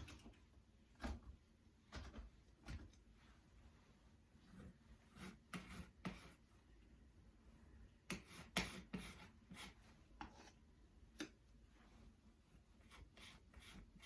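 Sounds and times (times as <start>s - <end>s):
putty knife scraping joint compound: 4.5s - 6.4s, 8.0s - 11.4s, 12.8s - 14.0s.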